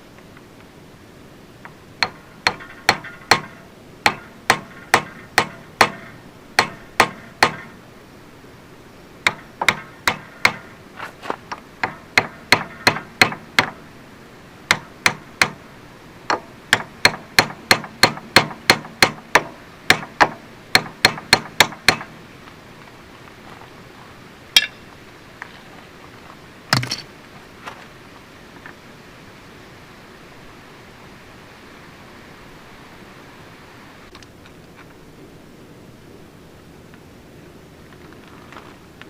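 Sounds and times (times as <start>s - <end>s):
hammer tapping on metal: 2.0s - 7.8s, 9.2s - 10.7s, 11.8s - 13.8s, 14.7s - 15.6s, 16.3s - 22.1s, 24.6s - 24.8s.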